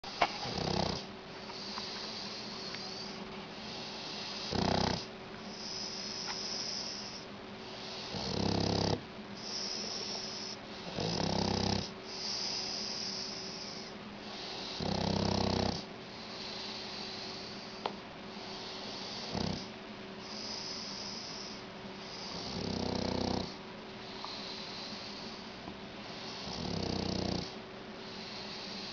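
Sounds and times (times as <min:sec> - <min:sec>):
soft hissing breath: 0:00.0 - 0:28.9
dog snoring: 0:00.1 - 0:25.5, 0:26.1 - 0:28.9.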